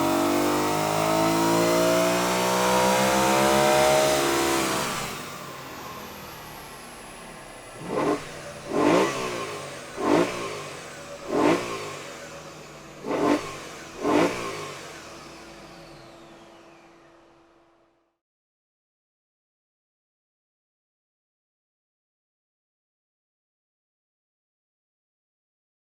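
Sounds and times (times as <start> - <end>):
car engine revving: 0.0 - 5.6, 7.2 - 17.6.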